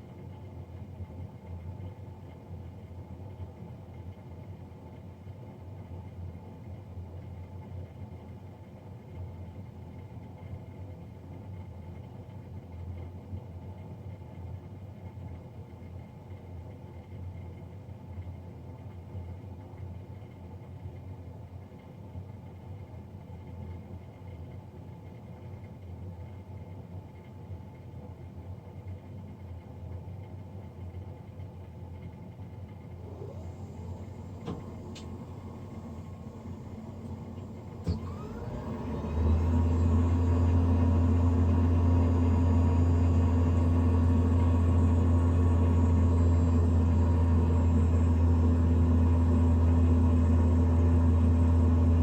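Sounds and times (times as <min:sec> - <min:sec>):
boiler blower fan humming: 0:33.0 - 0:52.0.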